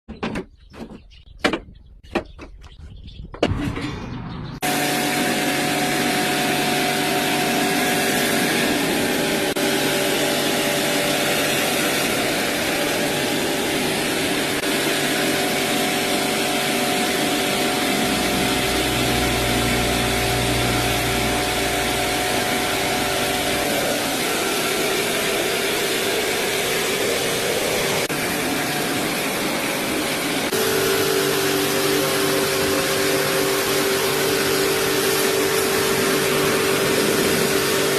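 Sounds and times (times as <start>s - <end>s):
deeper hum: 2.8s - 10.8s, 16.9s - 24.1s
pressure washer motor whine: 3.6s - 37.9s
water jet spraying hiss: 26.2s - 37.9s.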